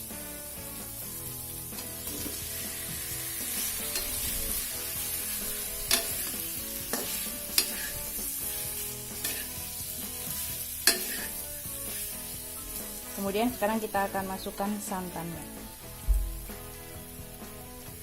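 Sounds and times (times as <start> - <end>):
food sizzling in a frying pan: 0.0 - 18.0.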